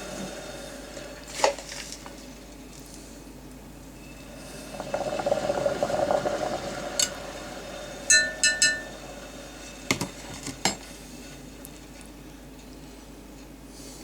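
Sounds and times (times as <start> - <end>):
stirring scraping rattle: 4.0 - 11.9
clinks against glass: 8.1 - 8.9.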